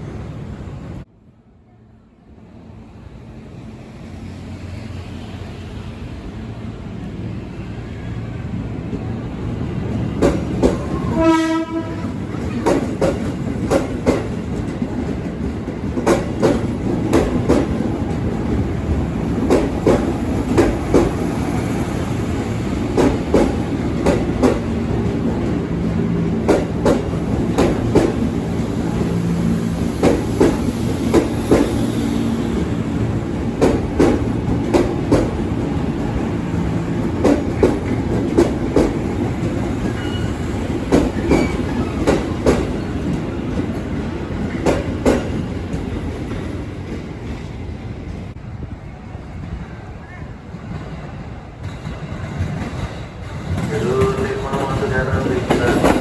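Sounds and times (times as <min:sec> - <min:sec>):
train passing: 0:00.0 - 0:56.0
train wheels clacking: 0:09.9 - 0:18.7, 0:19.3 - 0:21.8, 0:22.5 - 0:47.5, 0:50.6 - 0:56.0
train horn blast: 0:10.9 - 0:12.3.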